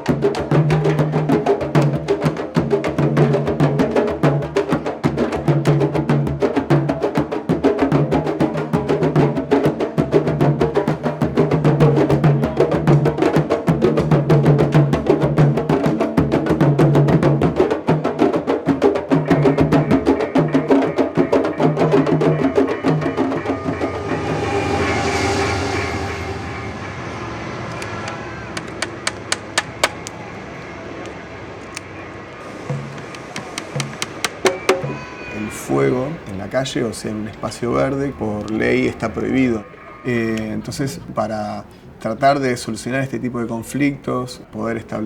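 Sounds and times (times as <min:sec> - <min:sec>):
fast hand drumming: 0:00.0 - 0:24.2, 0:28.6 - 0:30.1, 0:32.7 - 0:39.1
low-pitched drum tone: 0:07.9 - 0:30.3, 0:32.4 - 0:39.4
rushing noise: 0:09.8 - 0:42.1
sharp clicks: 0:27.8 - 0:30.2.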